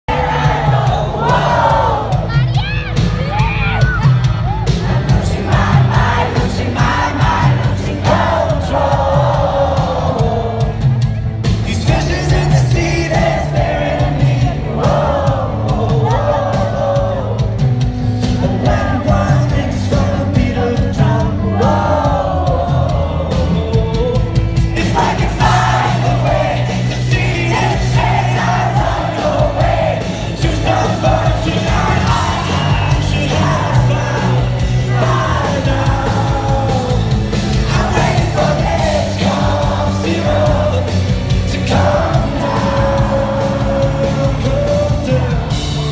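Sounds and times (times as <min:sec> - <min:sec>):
audience yelling and singing along: 0:00.0 - 0:45.9
drum kit and cymbals: 0:00.0 - 0:45.9
man singing over a band: 0:04.7 - 0:45.9.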